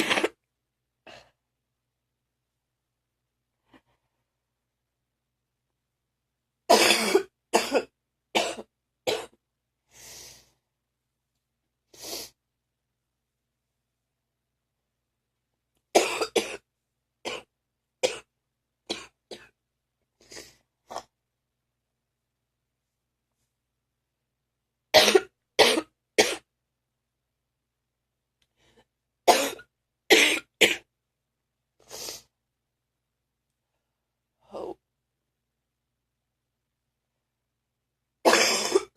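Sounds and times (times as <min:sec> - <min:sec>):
person coughing phlegmy: 0:00.0 - 0:00.4, 0:06.7 - 0:09.4, 0:16.0 - 0:16.6, 0:25.0 - 0:26.4, 0:29.3 - 0:30.8, 0:38.3 - 0:38.9
soft breath: 0:09.8 - 0:10.7.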